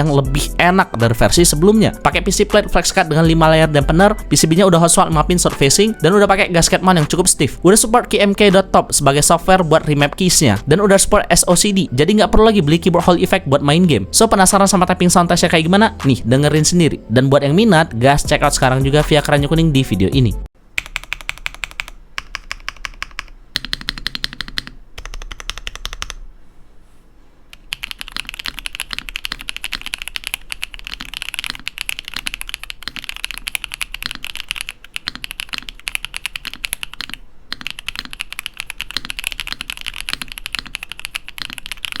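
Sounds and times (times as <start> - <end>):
mechanical keyboard typing: 20.8 - 26.2, 27.6 - 42.0.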